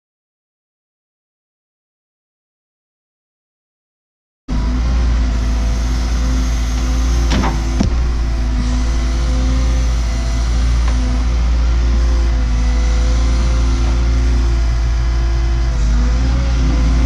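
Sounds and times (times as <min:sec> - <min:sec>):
excavator diesel engine running: 0:04.5 - 0:17.0
sharp knock: 0:07.3 - 0:09.0.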